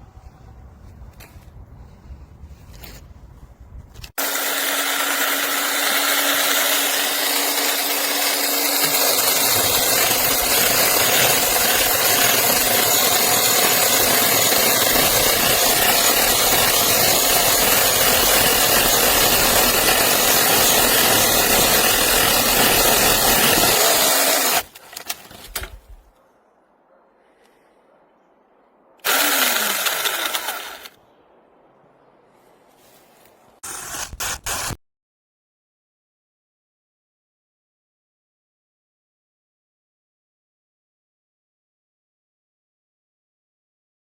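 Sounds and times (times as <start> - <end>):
chainsaw sawing wooden branch: 4.1 - 26.1, 29.0 - 30.9
electric chainsaw whining: 4.2 - 24.7, 29.0 - 31.0.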